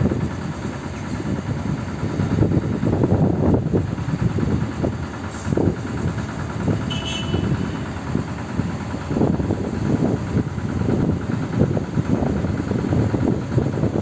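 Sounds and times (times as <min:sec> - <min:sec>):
excavator diesel engine rumbling: 0:00.0 - 0:14.0.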